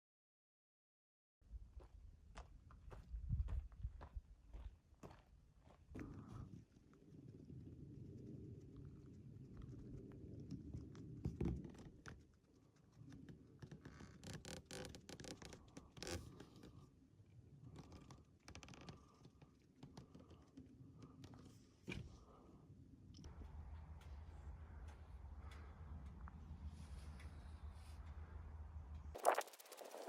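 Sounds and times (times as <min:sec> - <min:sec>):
faint scratching and scraping: 0:05.9 - 0:30.0.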